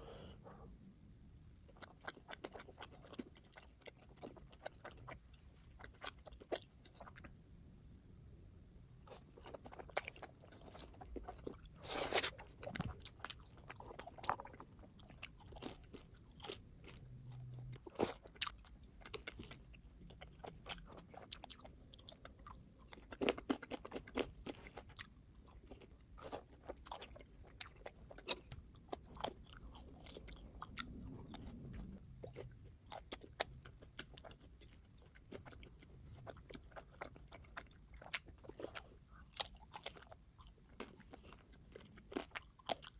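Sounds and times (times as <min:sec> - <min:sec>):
person chewing crunchy food: 0:01.6 - 0:07.4, 0:09.0 - 0:42.9.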